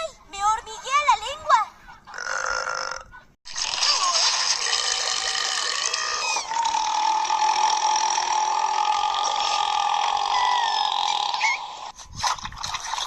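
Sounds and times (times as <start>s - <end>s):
long human burp: 2.1s - 11.4s.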